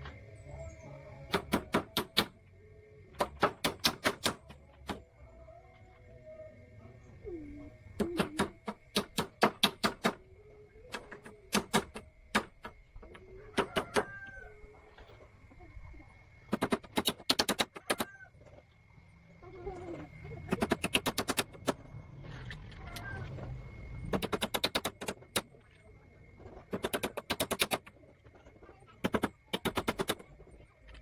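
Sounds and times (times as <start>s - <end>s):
hammer striking wood: 3.2s - 5.0s, 8.0s - 10.2s, 11.0s - 12.7s.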